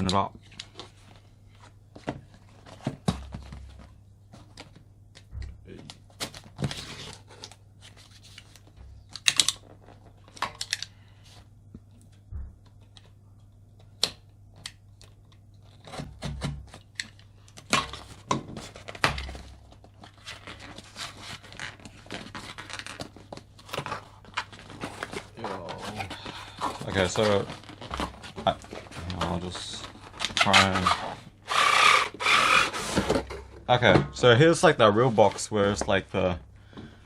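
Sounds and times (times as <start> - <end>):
cardboard tearing and rustling: 18.0 - 33.5.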